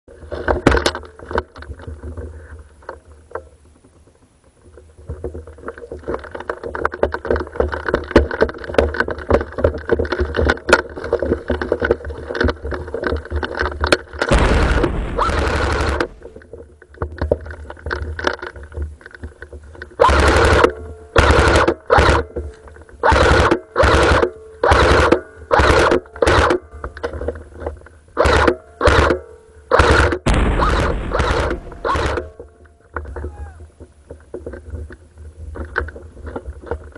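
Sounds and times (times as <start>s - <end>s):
airsoft guns firing: 14.3s - 16.4s, 20.0s - 22.2s, 23.0s - 26.5s, 29.7s - 32.5s.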